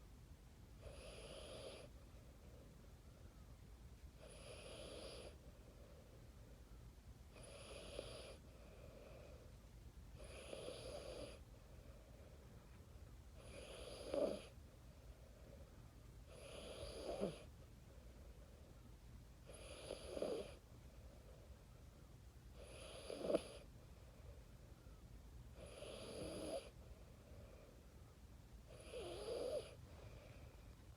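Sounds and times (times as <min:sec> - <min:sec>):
child snoring: 0:00.8 - 0:01.9, 0:04.2 - 0:05.4, 0:07.4 - 0:08.4, 0:10.2 - 0:11.4, 0:13.4 - 0:14.5, 0:16.3 - 0:17.5, 0:19.5 - 0:20.6, 0:22.6 - 0:23.7, 0:25.6 - 0:26.8, 0:28.7 - 0:29.8.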